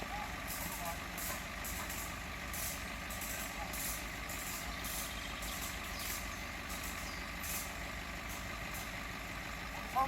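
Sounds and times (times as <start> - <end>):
engine idling: 0.0 - 10.0.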